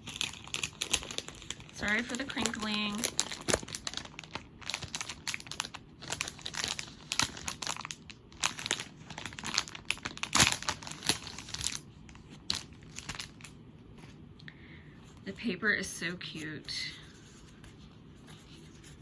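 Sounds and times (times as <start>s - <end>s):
packaging crinkling and tearing: 0.0s - 13.6s.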